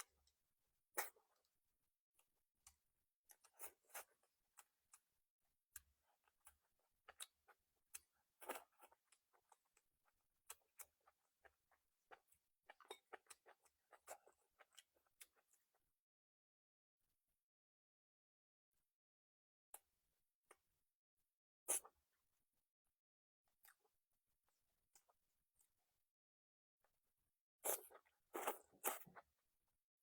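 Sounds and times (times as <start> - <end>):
person chewing: 27.7 - 29.2.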